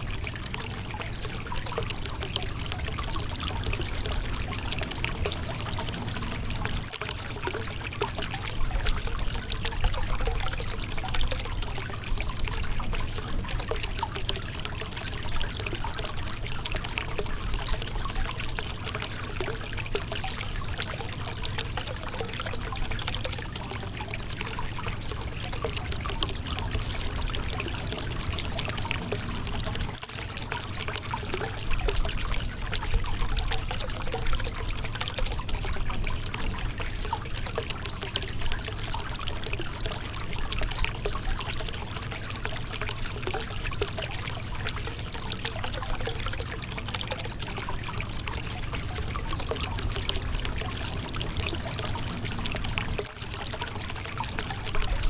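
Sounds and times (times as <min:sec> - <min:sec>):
river water splashing over rocks: 0:23.3 - 0:55.0.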